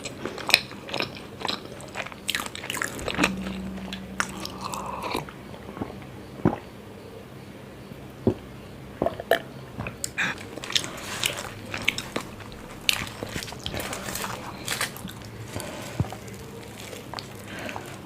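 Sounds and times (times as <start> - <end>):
person chewing with mouth clicks: 9.1 - 18.0.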